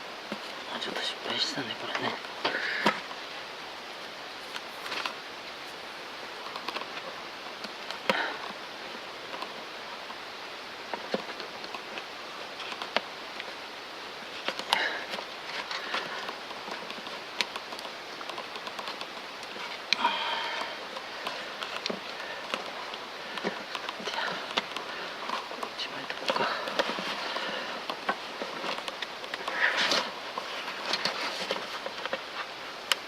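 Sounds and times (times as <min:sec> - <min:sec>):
steady hiss: 0:00.0 - 0:33.0
tape clicks and rustles: 0:03.9 - 0:33.0.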